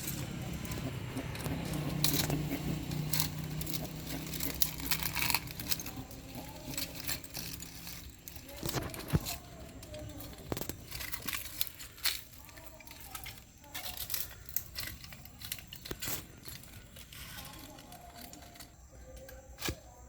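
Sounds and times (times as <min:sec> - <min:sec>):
tortoise clicks and knocks: 0:00.0 - 0:20.0.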